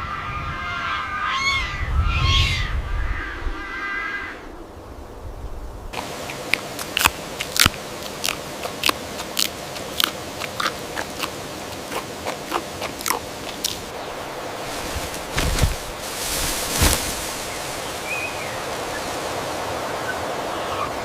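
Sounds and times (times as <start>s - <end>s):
steady hiss: 4.6s - 21.0s
animal chewing crunchily: 6.0s - 13.9s.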